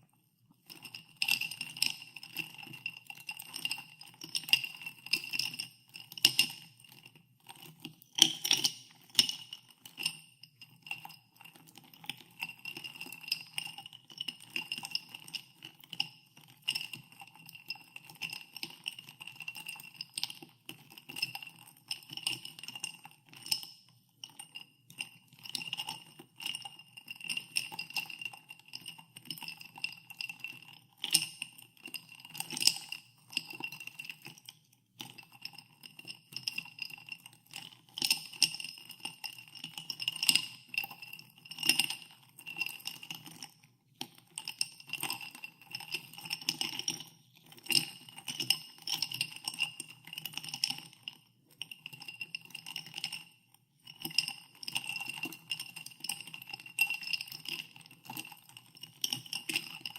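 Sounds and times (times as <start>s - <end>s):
ice cubes clinking in a glass: 0.9s - 16.0s, 25.4s - 43.5s, 44.2s - 53.2s, 53.9s - 59.9s.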